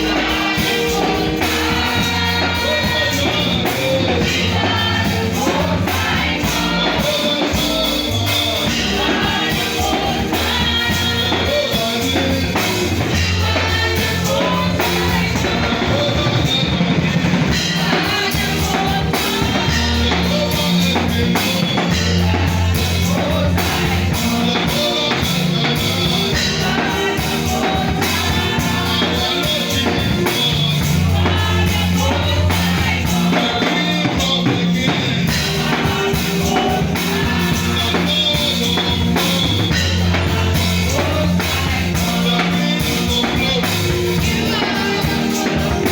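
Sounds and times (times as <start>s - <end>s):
live band music: 0.0s - 45.9s.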